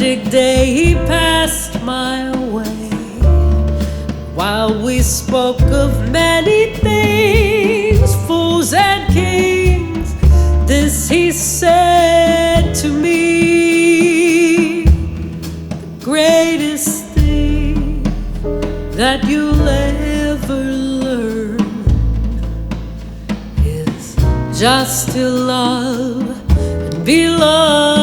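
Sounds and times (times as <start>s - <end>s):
acoustic bass: 0.0s - 28.0s
drums: 0.0s - 28.0s
piano: 0.0s - 28.0s.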